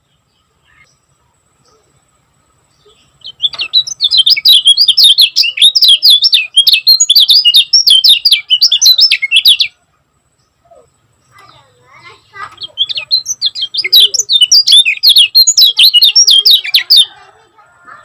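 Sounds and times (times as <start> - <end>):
white-eye bird singing quick chirps: 2.7 - 9.8, 10.6 - 17.1.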